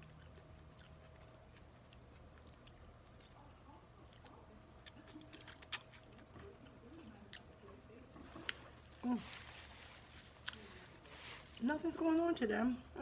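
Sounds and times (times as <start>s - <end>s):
person chewing food: 0.0s - 7.8s, 8.4s - 11.0s
wet mouth clicks: 4.8s - 6.1s.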